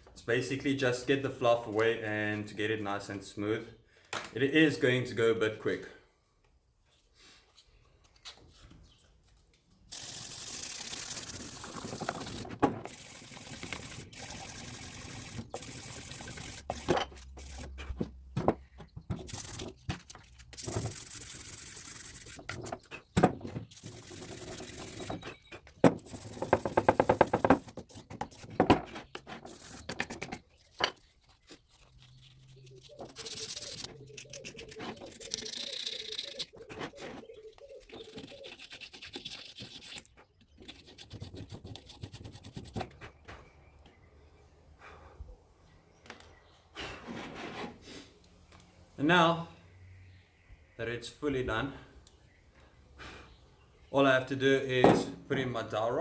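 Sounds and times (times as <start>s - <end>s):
sandpaper rubbing on wood: 9.9s - 17.9s, 19.2s - 19.8s, 20.6s - 23.1s, 23.7s - 37.1s, 37.9s - 40.0s.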